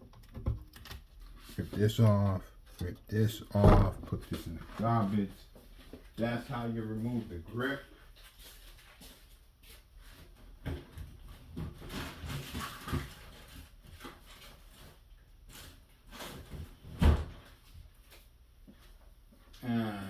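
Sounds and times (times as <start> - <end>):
loud thump: 3.6 - 4.1.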